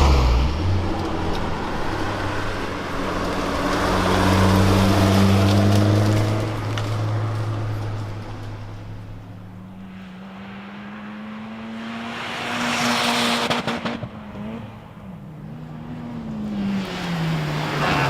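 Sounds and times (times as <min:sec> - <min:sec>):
rally car engine revving: 0:16.5 - 0:18.0.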